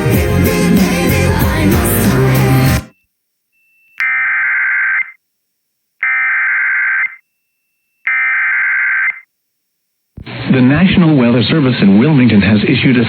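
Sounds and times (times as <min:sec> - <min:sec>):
buzzy digital data tones: 0:04.0 - 0:05.2, 0:06.0 - 0:09.3.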